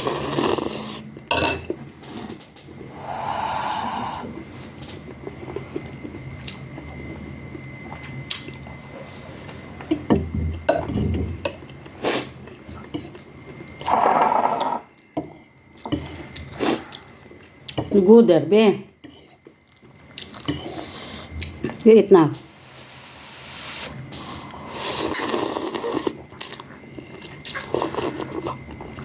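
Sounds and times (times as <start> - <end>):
slurping noodle soup: 0.0 - 1.0, 13.8 - 14.8, 22.9 - 28.7.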